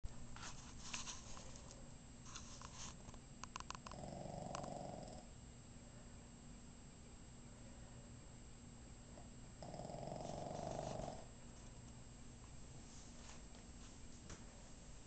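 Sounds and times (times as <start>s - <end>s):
dog snoring: 3.7s - 5.3s, 9.6s - 11.3s.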